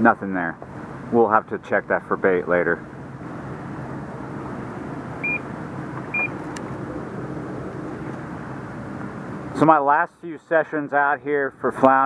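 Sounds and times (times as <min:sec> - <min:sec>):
low engine drone: 0:00.0 - 0:09.7
short high beeps: 0:05.2 - 0:05.4, 0:06.1 - 0:06.3.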